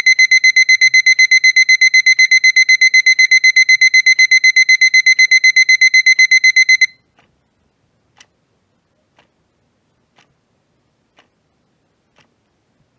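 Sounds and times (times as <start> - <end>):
kitchen timer alarm beeping: 0.0 - 7.0
faint ticks: 8.2 - 8.4, 10.1 - 10.4, 11.1 - 12.6.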